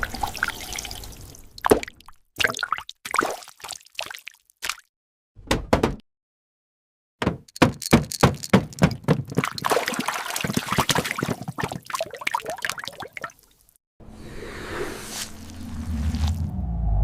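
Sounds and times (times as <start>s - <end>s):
wet splats and drips: 1.6s - 4.9s, 9.1s - 13.7s.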